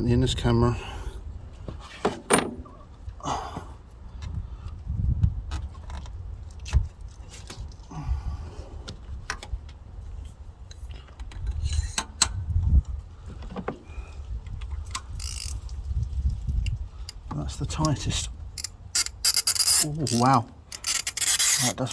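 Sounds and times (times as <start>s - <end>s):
handling bumps and knocks: 1.7s - 2.9s
metal tools clinking: 2.2s - 2.8s, 17.7s - 21.9s.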